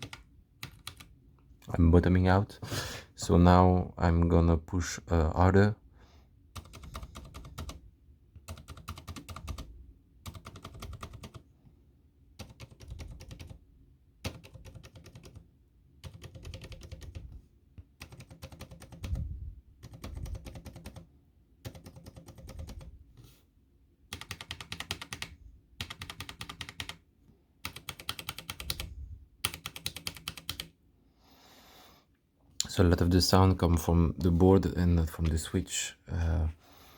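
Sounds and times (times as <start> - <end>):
mechanical keyboard keystrokes: 0.0 - 1.1, 6.6 - 7.8, 8.4 - 11.4, 12.4 - 13.6, 14.2 - 15.4, 16.0 - 17.3, 18.0 - 19.2, 19.8 - 21.0, 24.1 - 27.0, 27.6 - 30.7.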